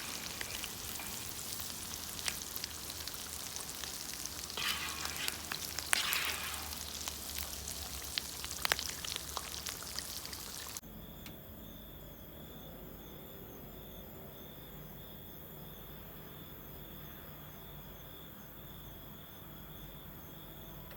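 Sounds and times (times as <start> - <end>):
food sizzling and popping in oil: 0.0 - 10.8
crickets chirping: 0.0 - 20.9.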